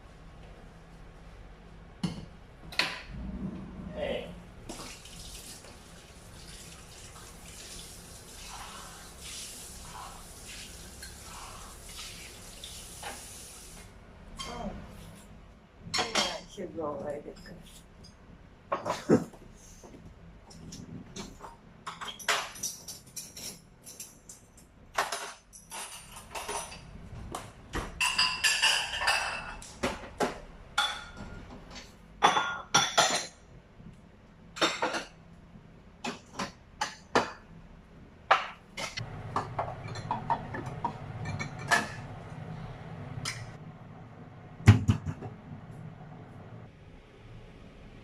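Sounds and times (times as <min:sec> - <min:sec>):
low steady hum: 0:00.0 - 0:07.7, 0:38.9 - 0:48.0
dishes and utensils clinking: 0:15.9 - 0:16.5, 0:20.6 - 0:26.9, 0:27.8 - 0:33.4, 0:34.6 - 0:35.2, 0:38.3 - 0:42.1.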